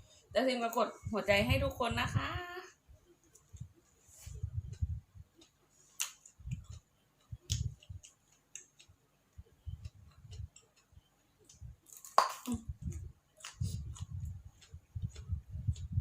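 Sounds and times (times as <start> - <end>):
person chewing crunchy food: 4.6 - 16.0.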